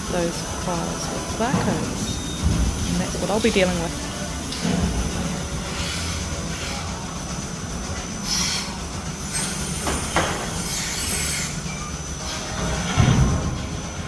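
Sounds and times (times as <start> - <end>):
milking carousel rumbling: 0.0 - 14.0
high hissing: 8.2 - 11.6.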